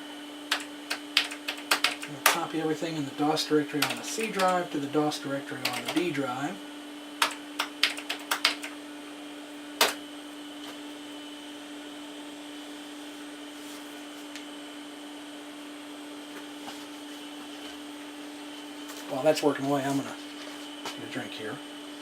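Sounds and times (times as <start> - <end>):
computer fan and drives humming: 0.0 - 22.0
keystrokes on computer keyboard: 0.5 - 2.4, 3.8 - 4.6, 5.6 - 6.0, 7.2 - 8.8.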